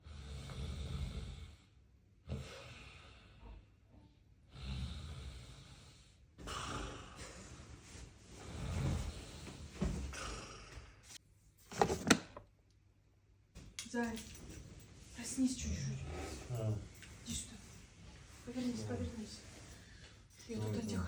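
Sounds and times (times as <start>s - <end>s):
person snoring: 4.5s - 7.4s.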